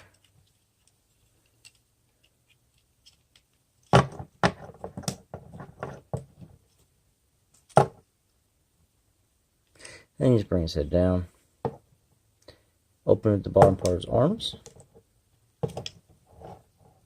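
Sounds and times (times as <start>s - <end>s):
plastic toy parts clicking: 0.0s - 3.9s.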